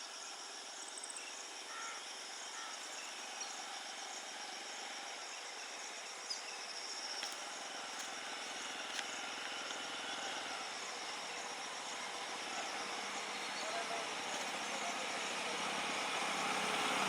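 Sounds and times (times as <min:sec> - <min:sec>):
insects chirping: 0:00.0 - 0:17.0
outdoor hiss: 0:00.0 - 0:17.0.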